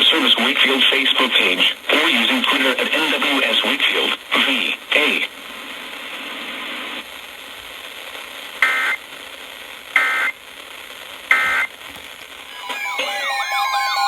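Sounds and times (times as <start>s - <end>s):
radio hiss: 0.0s - 14.0s
shrill digital data tones: 12.5s - 14.0s.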